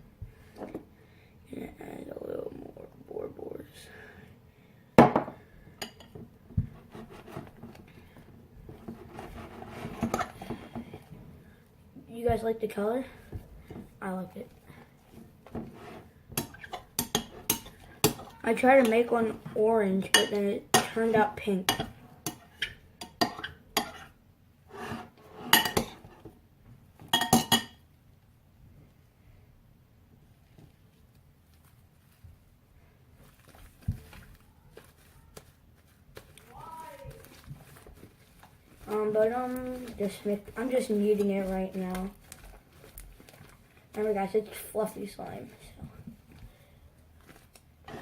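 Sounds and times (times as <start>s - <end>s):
spoon scraping: 8.8s - 10.5s, 15.7s - 19.1s, 20.1s - 26.2s, 33.2s - 43.8s, 47.3s - 48.0s
spoon clinking against a bowl: 27.1s - 27.8s
slime squelching: 30.7s - 47.8s.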